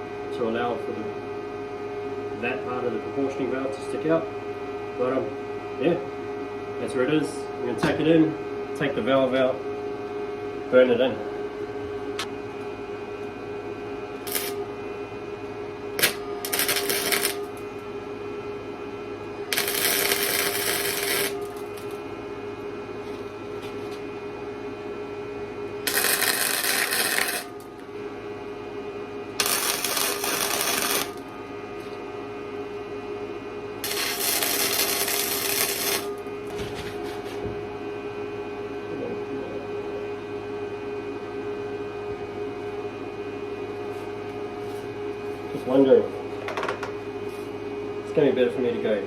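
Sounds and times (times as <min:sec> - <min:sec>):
steady hum: 0:00.0 - 0:49.0
welding arc crackle: 0:14.2 - 0:14.6, 0:16.0 - 0:17.6, 0:19.5 - 0:22.0, 0:25.8 - 0:27.7, 0:29.4 - 0:31.3, 0:33.8 - 0:36.2.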